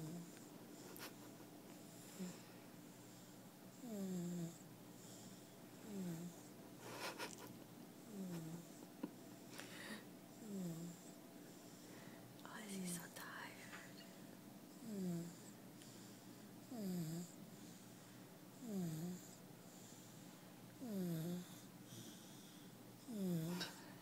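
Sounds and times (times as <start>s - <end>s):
pet snoring with squeaky whine: 0.0s - 1.0s, 2.0s - 6.6s, 8.0s - 8.8s, 10.3s - 11.9s, 14.7s - 17.8s, 18.5s - 20.2s, 20.8s - 23.8s.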